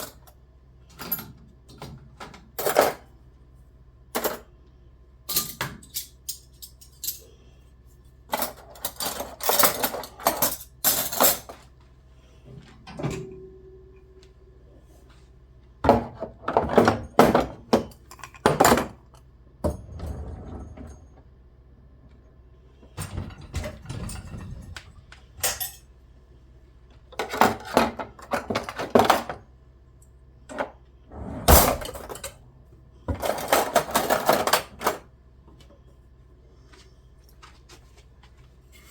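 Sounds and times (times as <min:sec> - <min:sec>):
kitchen items clinking and clattering: 0:00.0 - 0:03.2, 0:04.2 - 0:04.6, 0:05.3 - 0:07.4, 0:08.3 - 0:11.6, 0:15.8 - 0:21.2, 0:23.0 - 0:25.9, 0:27.1 - 0:29.5, 0:30.5 - 0:32.4, 0:33.1 - 0:35.1.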